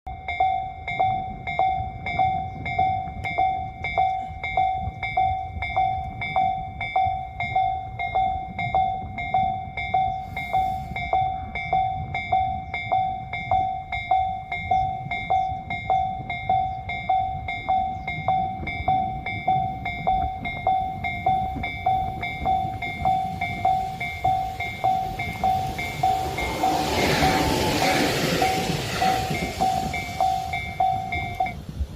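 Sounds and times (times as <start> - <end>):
approaching electric train: 0.1 - 31.9
level crossing warning bell: 0.1 - 31.9.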